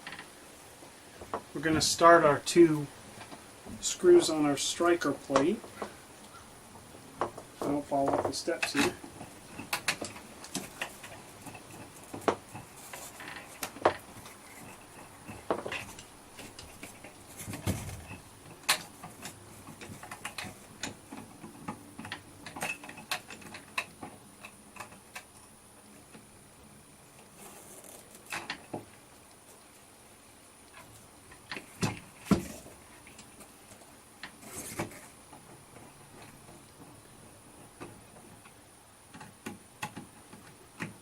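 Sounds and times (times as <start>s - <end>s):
metallic clicks and scrapes of screws: 7.7s - 25.5s, 27.2s - 28.7s.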